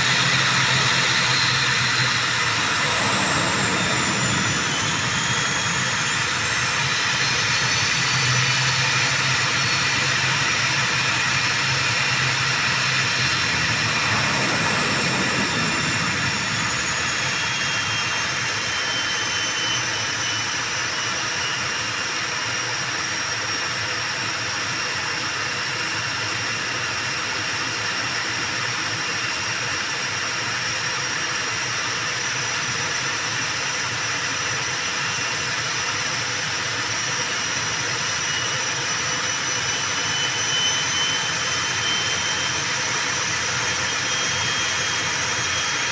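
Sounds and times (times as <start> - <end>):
low hum: 0.0 - 8.6, 11.5 - 18.8
high turbine whines: 0.0 - 21.1, 35.8 - 45.9
turboprop engines running: 0.0 - 28.9, 31.8 - 45.9.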